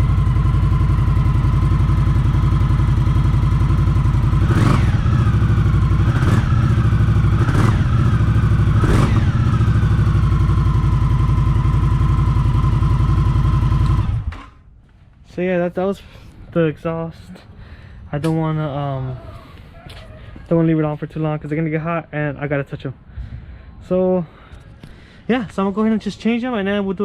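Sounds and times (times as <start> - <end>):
motorcycle engine idling: 0.0 - 14.6
motorcycle engine revving: 0.0 - 14.6.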